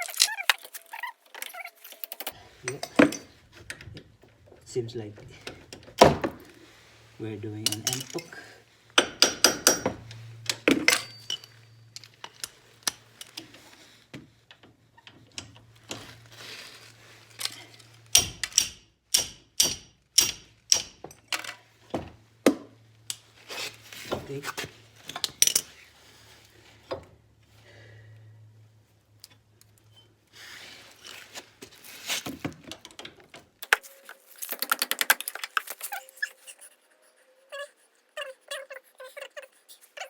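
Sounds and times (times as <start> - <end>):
hand tools clanking on metal: 1.4 - 3.9, 7.6 - 13.4, 17.4 - 21.6.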